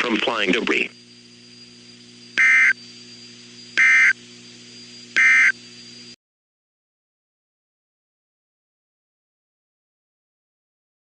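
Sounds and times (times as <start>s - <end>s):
buzzy digital data tones: 0.0s - 6.2s
faint steady hum: 0.0s - 6.2s.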